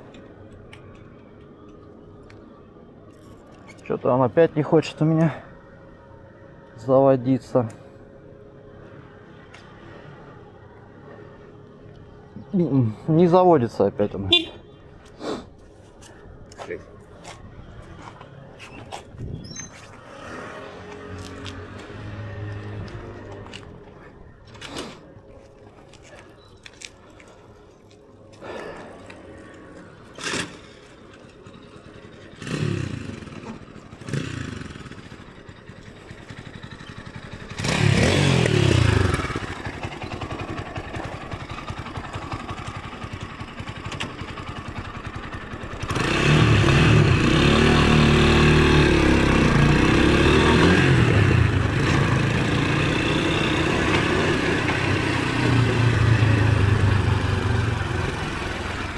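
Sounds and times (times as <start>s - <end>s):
motorcycle engine starting and revving: 20.0s - 23.8s, 30.0s - 58.9s.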